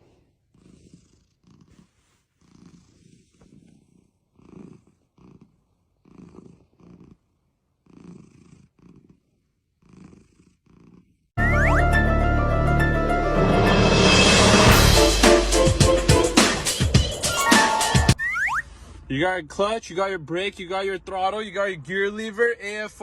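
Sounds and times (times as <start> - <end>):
cat purring: 0.0 - 11.3.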